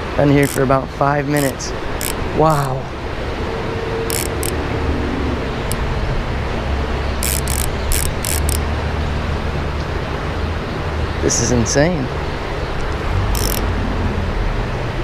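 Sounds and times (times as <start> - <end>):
fishing reel drag ratcheting: 0.2 - 0.7, 1.3 - 2.7, 4.1 - 4.6, 7.2 - 8.6, 13.3 - 13.6.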